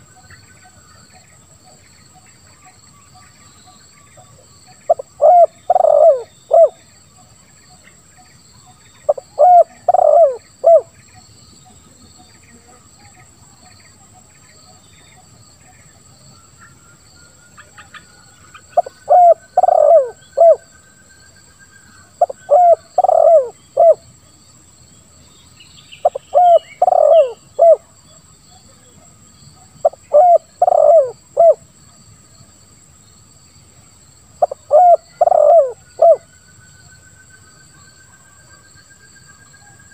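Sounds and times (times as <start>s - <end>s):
small birds chirping: 0.0s - 31.6s, 32.3s - 39.2s
dove cooing: 4.9s - 6.8s, 9.1s - 10.9s, 18.6s - 20.6s, 22.2s - 24.0s, 26.0s - 27.8s, 29.8s - 31.6s, 34.4s - 36.2s.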